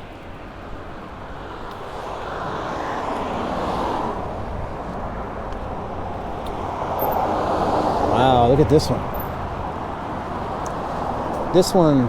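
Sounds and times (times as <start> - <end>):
vehicle passing: 1.8 - 12.0
constant low rumble: 8.0 - 12.0.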